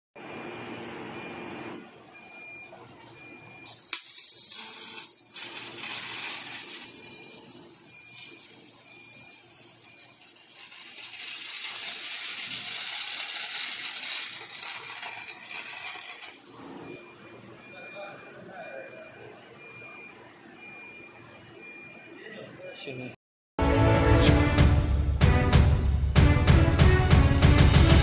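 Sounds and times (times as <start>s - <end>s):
laser cutter gas hiss: 3.7s - 16.4s.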